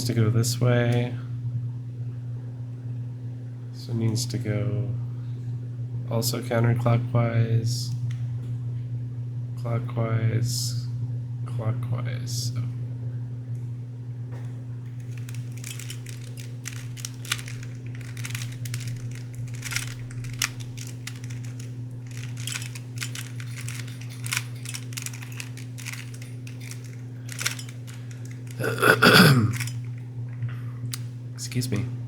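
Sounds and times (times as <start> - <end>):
steady low hum: 0.0 - 32.0
plastic puzzle cube clicks and scrapes: 15.0 - 28.6.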